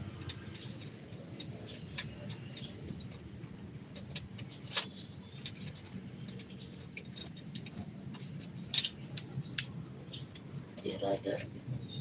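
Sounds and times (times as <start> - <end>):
small clicks and taps: 0.1 - 10.8.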